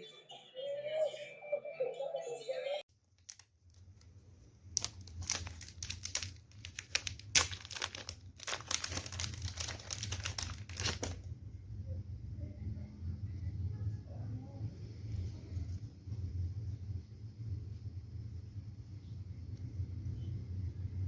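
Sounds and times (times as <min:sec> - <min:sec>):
plastic packaging crinkling: 0:02.9 - 0:11.3
steady low hum: 0:11.2 - 0:21.0.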